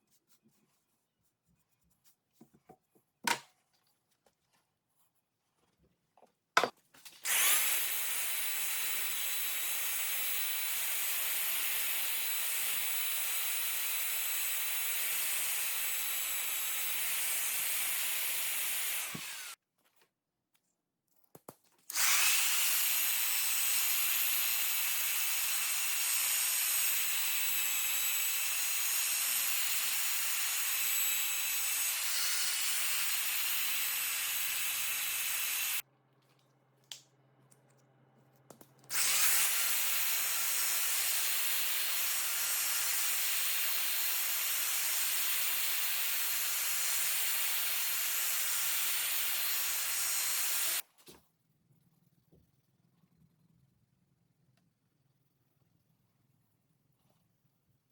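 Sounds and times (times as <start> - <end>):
electric power tool whining: 7.2 - 19.6, 21.9 - 35.8, 38.9 - 50.8.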